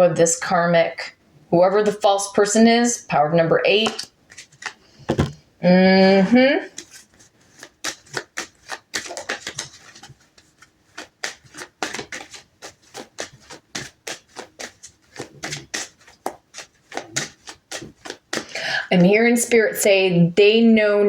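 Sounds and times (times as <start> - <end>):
cards shuffling clicks and slaps: 3.8 - 5.4, 6.8 - 18.6.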